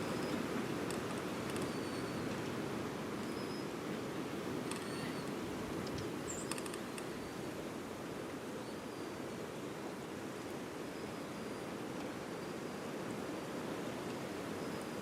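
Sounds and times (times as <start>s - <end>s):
light clicks: 4.6s - 7.1s.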